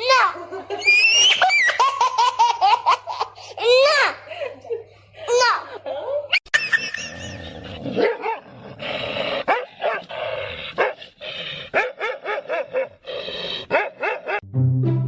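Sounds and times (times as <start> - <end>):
dog barking and yipping: 8.0 - 8.4, 9.4 - 10.1, 10.8 - 11.0, 11.7 - 13.0, 13.7 - 14.4.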